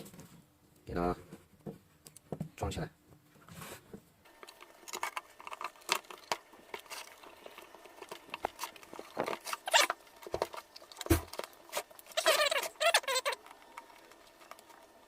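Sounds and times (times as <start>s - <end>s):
rustling: 3.2s - 15.0s.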